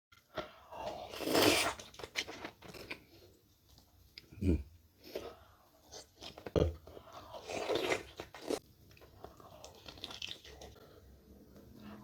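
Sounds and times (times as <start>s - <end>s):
person chewing: 0.2s - 3.4s, 5.0s - 11.1s.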